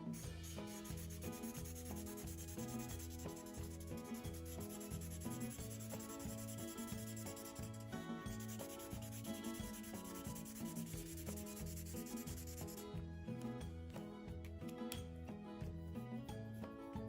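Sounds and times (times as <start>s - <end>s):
background music with bass line: 0.0s - 17.0s
scratchy rubbing on paper: 0.4s - 12.8s.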